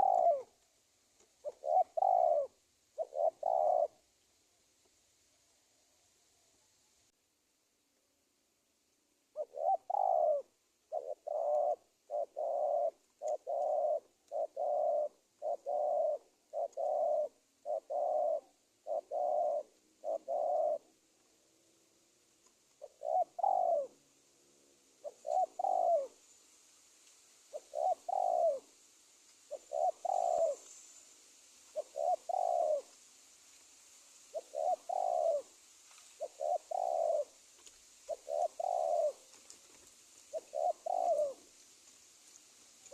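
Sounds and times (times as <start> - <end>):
dove cooing: 0.0 - 0.6, 1.2 - 4.0, 9.3 - 21.4, 22.7 - 26.2, 27.5 - 28.8, 29.5 - 31.0, 31.7 - 33.0, 34.3 - 37.4, 38.0 - 41.6.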